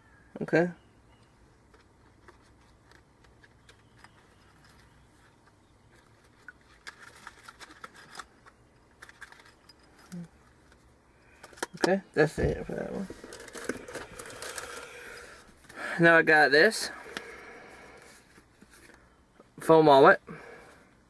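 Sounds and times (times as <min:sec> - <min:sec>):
plastic cards clicking and rustling: 0:01.6 - 0:11.9, 0:12.9 - 0:15.8.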